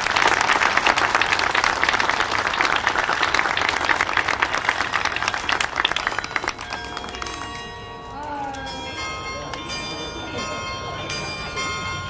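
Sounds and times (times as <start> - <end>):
audience applauding: 0.0 - 7.6.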